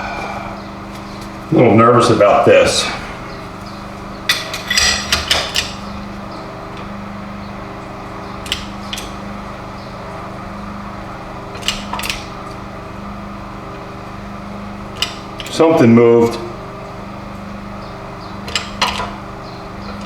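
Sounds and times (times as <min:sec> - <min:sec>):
low hum: 0:00.0 - 0:05.1.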